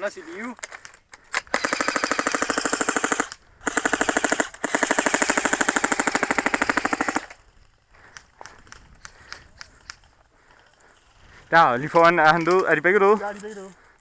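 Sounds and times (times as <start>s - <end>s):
airsoft gun firing bursts: 1.4s - 7.4s.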